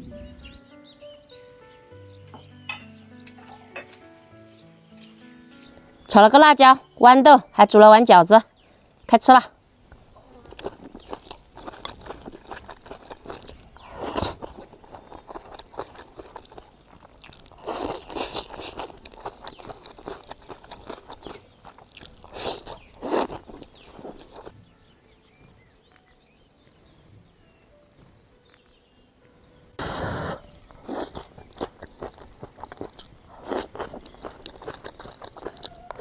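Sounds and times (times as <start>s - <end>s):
person chewing and crunching food: 10.0s - 24.5s, 29.8s - 36.0s.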